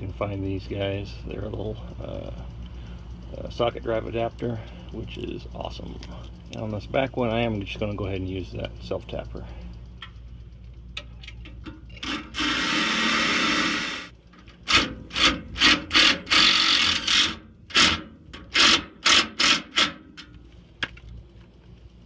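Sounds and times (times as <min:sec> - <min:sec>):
impact driver driving screw: 0:12.0 - 0:14.1.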